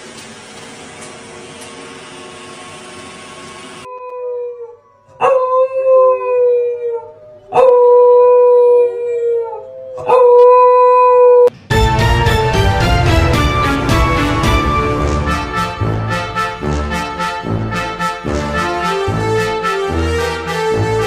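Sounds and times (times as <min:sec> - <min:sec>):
dog howling: 0:03.9 - 0:11.5.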